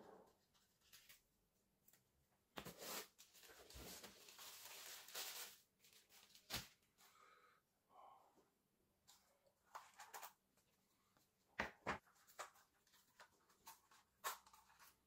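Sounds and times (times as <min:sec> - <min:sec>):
packaging rustling: 0:02.7 - 0:06.8.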